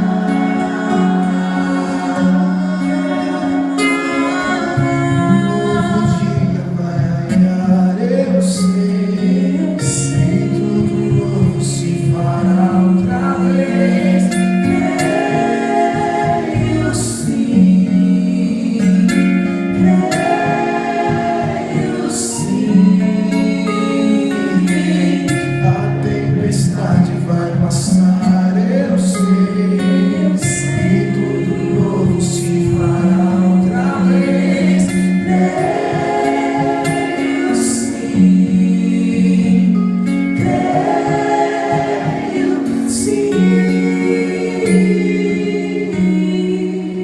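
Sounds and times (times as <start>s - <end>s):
steady bass: 0.0s - 47.0s
sustained chords: 30.6s - 47.0s.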